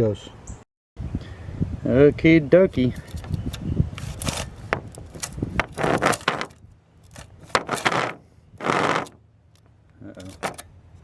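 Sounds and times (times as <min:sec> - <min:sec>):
hand file rasping on metal: 0:07.5 - 0:09.2.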